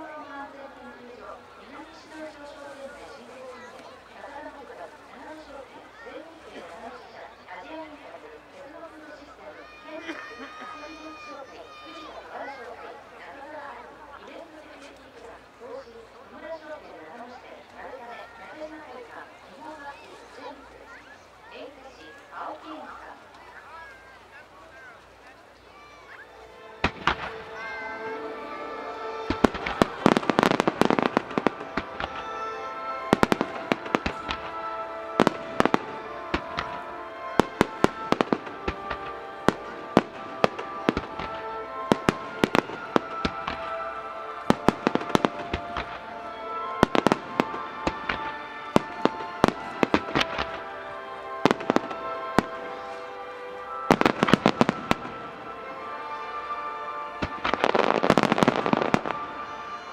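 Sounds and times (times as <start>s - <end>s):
music with held notes: 22.1s - 59.9s
fireworks bangs and crackles: 26.8s - 28.2s, 29.0s - 53.0s, 53.7s - 55.5s, 57.1s - 59.9s.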